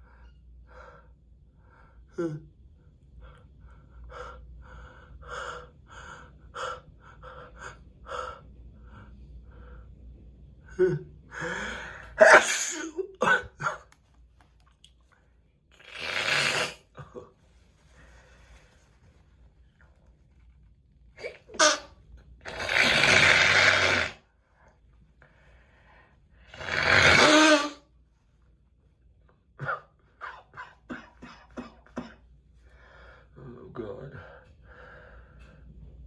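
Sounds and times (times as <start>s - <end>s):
man gasping: 10.7s - 12.2s
man sneezing: 12.2s - 13.9s.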